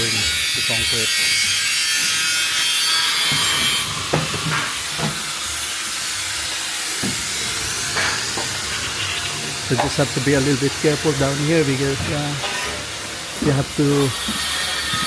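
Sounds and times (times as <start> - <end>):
power saw cutting wood: 0.0 - 15.0.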